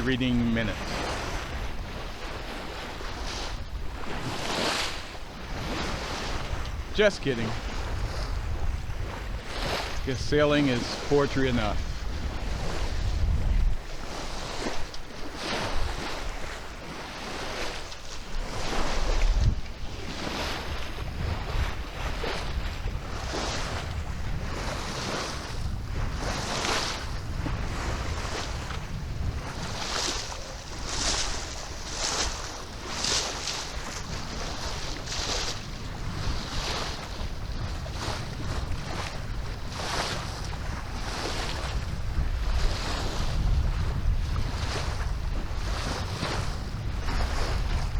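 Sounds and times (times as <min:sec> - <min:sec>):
water rushing along boat hull: 0:00.0 - 0:47.9
wind buffeting microphone: 0:00.0 - 0:47.9.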